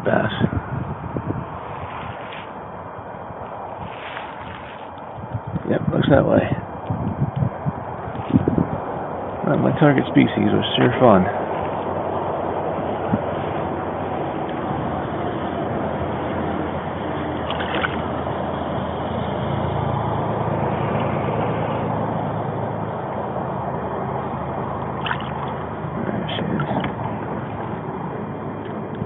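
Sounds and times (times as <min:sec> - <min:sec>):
boat engine humming: 0:00.0 - 0:29.0
water sloshing: 0:01.7 - 0:05.4, 0:17.4 - 0:18.2, 0:24.8 - 0:27.8.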